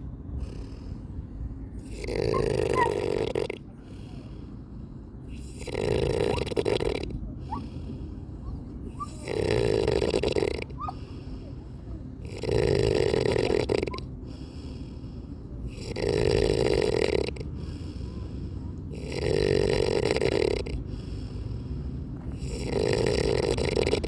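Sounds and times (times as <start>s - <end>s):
quiet breathing: 0.0s - 24.0s
person snoring: 1.8s - 4.2s, 5.3s - 7.8s, 8.9s - 11.0s, 12.2s - 15.0s, 15.7s - 18.2s, 18.9s - 21.6s, 22.3s - 24.0s.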